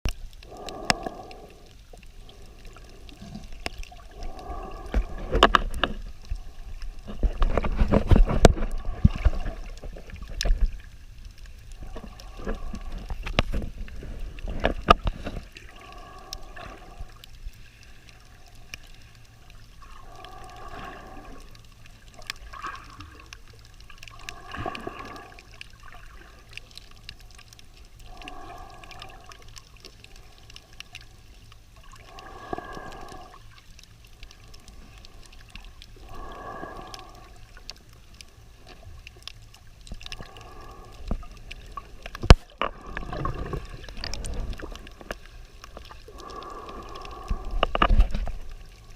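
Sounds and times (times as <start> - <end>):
faint clicks: 0.1 - 48.9
swimmer breathing underwater: 0.4 - 3.4, 36.0 - 37.4, 46.1 - 48.2.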